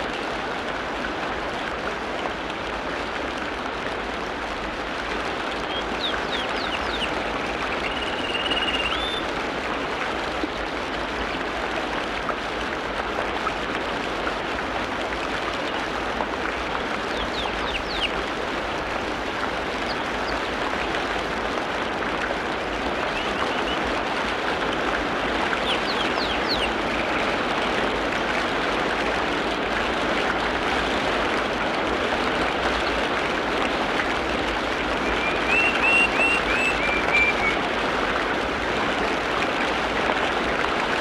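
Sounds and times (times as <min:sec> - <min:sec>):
high bird chirps: 0:05.7 - 0:07.1, 0:07.8 - 0:09.2, 0:35.1 - 0:37.6.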